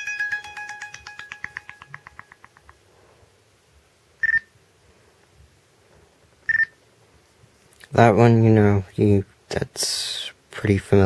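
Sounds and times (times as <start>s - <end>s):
plucked-string ringtone: 0.0s - 2.7s.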